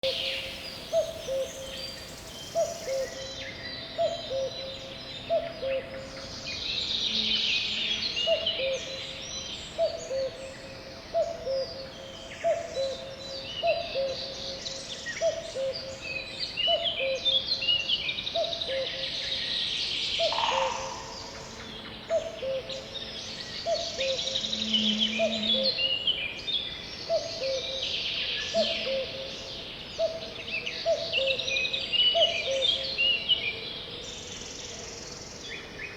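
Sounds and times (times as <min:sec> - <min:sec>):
bird chorus chirping: 0:00.0 - 0:05.9, 0:08.2 - 0:33.5
low two-note hooting call: 0:24.5 - 0:25.8.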